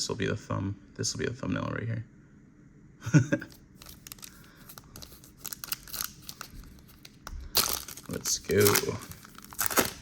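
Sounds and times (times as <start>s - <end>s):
foil wrapper tearing and crinkling: 3.8s - 10.0s.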